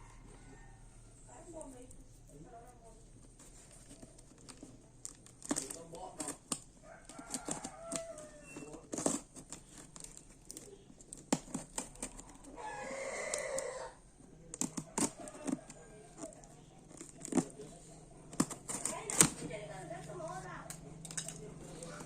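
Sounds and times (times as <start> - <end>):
packaging crinkling and tearing: 3.2 - 12.6, 14.5 - 20.5.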